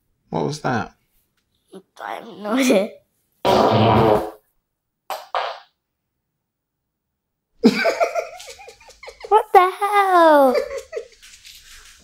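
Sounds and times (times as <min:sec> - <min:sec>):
child's voice: 0:01.7 - 0:03.0, 0:09.3 - 0:10.7
fart sound toy: 0:03.4 - 0:04.4, 0:05.1 - 0:05.8.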